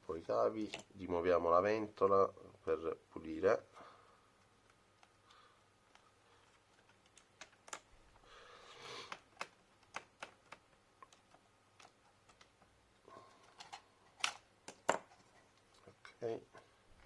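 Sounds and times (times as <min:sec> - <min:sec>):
plastic laptop parts clicking: 0:04.5 - 0:08.3, 0:09.0 - 0:12.7, 0:13.4 - 0:15.1.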